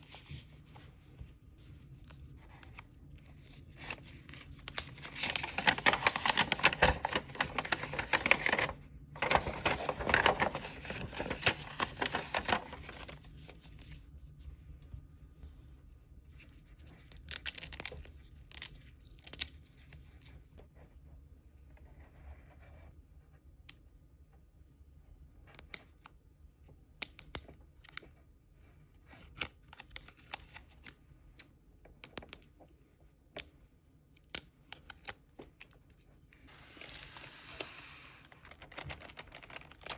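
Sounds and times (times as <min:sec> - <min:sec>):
packaging torn open and crinkled: 0:03.4 - 0:13.3, 0:17.1 - 0:19.8, 0:36.5 - 0:39.9.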